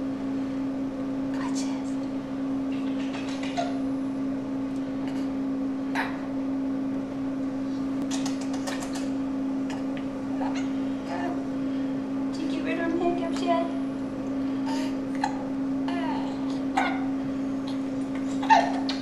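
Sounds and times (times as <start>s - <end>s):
steady low hum: 0.0s - 19.0s
baby hiccupping: 2.7s - 3.9s, 5.0s - 6.3s, 8.0s - 10.7s, 14.7s - 17.8s.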